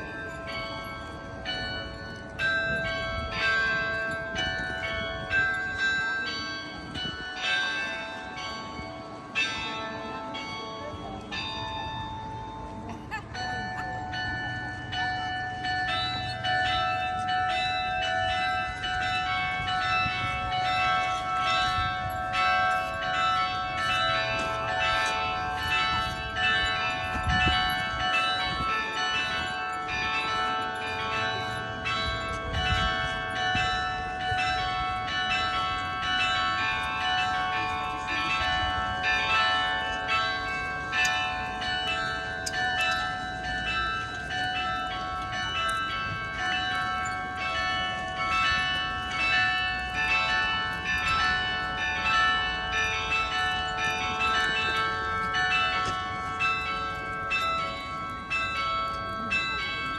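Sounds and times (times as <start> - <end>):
church bells pealing: 0.0 - 59.9.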